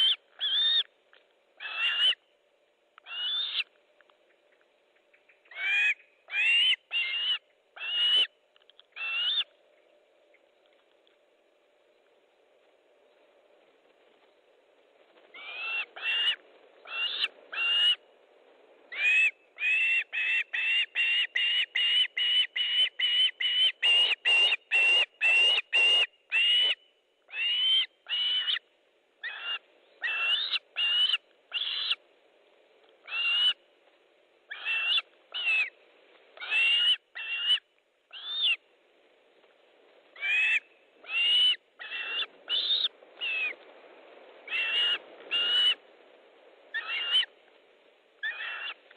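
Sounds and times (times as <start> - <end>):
osprey whistled calls: 0.0 - 0.9, 3.0 - 3.7, 5.2 - 8.3, 8.9 - 9.5, 18.9 - 28.6, 29.2 - 32.0, 34.5 - 35.8, 36.4 - 38.6, 40.2 - 43.6, 44.4 - 45.8, 46.7 - 47.3, 48.2 - 48.8.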